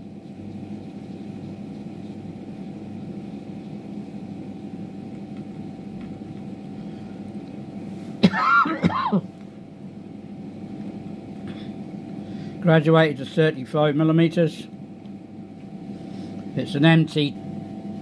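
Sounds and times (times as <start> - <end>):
steady low hum: 0.0 - 18.0
person clearing throat: 8.2 - 9.3.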